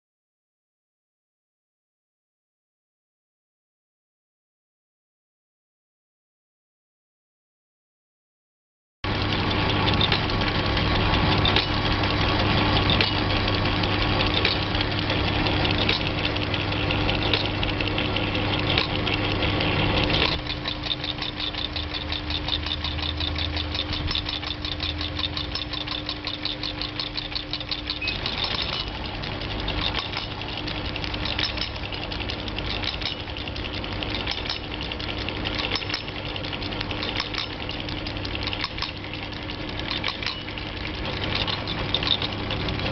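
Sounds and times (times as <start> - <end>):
sewing machine running: 9.1 - 42.9.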